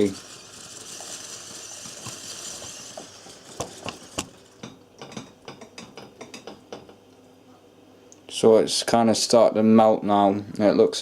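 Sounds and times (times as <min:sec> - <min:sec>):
boiling water hissing: 0:00.0 - 0:06.6.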